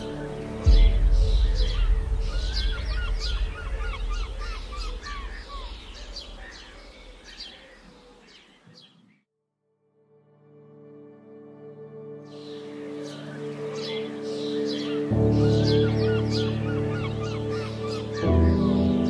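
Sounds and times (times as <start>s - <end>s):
birds chirping: 0.0s - 9.2s, 12.2s - 19.0s
loud low rumble: 0.6s - 6.8s.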